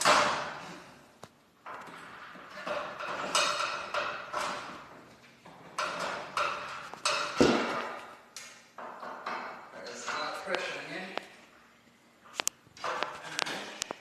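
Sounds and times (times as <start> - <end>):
metallic clanks and knocks: 1.6 - 8.1, 8.8 - 10.7.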